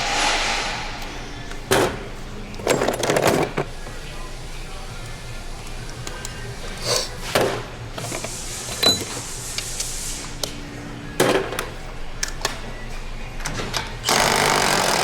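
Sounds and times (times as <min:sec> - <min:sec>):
short swish: 0:00.0 - 0:01.7.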